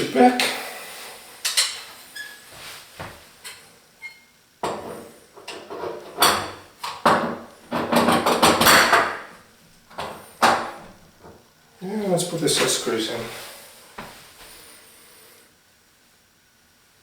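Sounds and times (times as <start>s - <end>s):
knocks and scraping: 4.6s - 9.3s.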